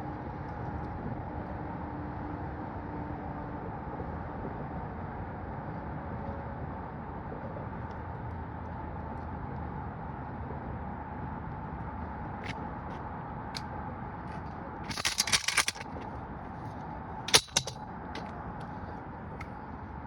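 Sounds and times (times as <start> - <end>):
rapid clicking and rattling: 14.9 - 16.0, 17.3 - 18.3.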